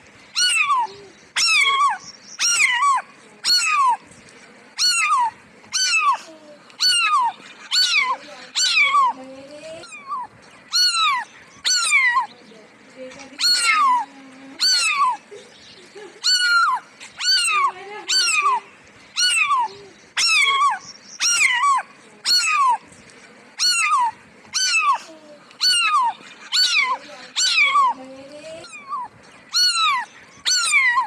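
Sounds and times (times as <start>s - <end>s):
cat meowing: 0.4s - 4.0s, 4.8s - 6.2s, 6.8s - 9.2s, 9.8s - 12.3s, 13.4s - 15.2s, 16.2s - 18.6s, 19.2s - 22.8s, 23.6s - 28.0s, 28.6s - 31.0s.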